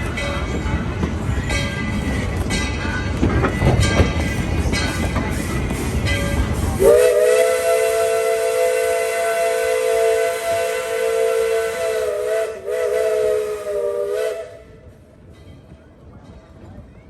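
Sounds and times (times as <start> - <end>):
steam hissing: 4.3 - 14.6
steam whistle blast: 6.8 - 14.7.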